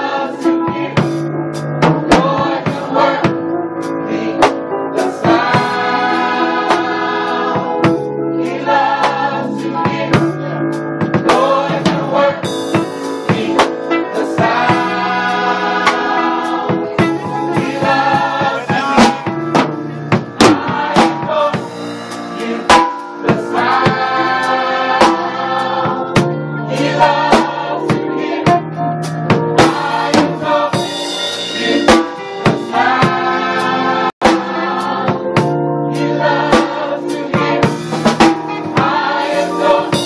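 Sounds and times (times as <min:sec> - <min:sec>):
drum kit: 0:00.0 - 0:40.0
gospel choir singing: 0:00.0 - 0:40.0.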